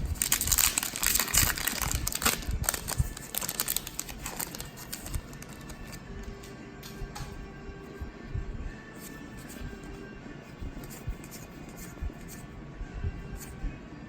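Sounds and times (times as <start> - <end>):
foil wrapper tearing and crinkling: 0.0 - 6.0.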